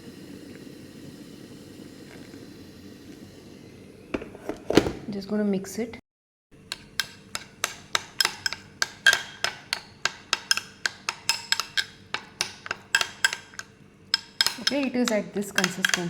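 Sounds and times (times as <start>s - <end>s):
spoon clicking against container: 6.7s - 16.0s.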